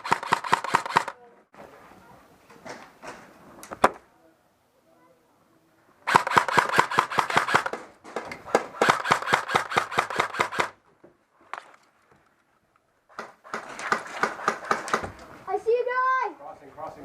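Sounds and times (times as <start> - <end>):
airsoft gun rapid bursts: 0.0 - 1.2, 6.1 - 7.7, 8.7 - 10.8
sharp clicks: 0.0 - 1.2, 6.1 - 7.8.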